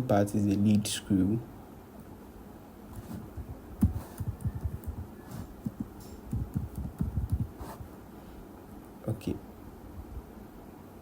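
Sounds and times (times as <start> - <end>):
computer keyboard typing: 3.8 - 7.9.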